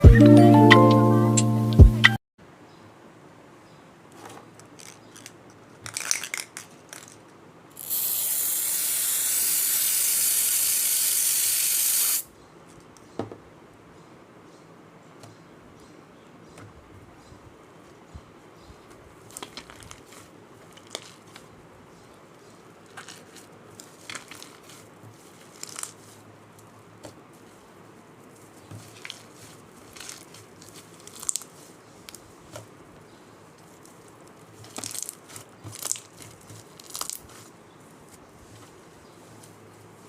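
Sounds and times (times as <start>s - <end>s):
slime crackling and popping: 25.4s - 25.9s, 28.9s - 31.5s, 34.6s - 37.4s.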